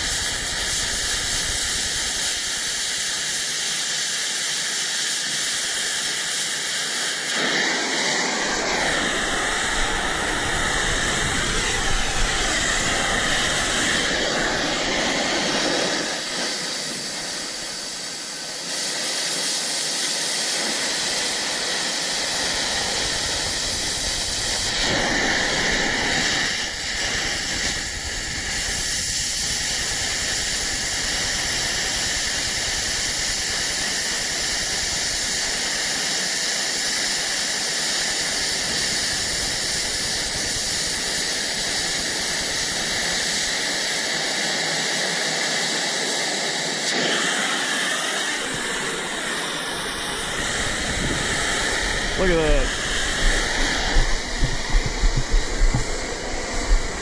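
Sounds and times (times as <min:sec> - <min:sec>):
cutting torch hissing: 0:00.0 - 0:57.0.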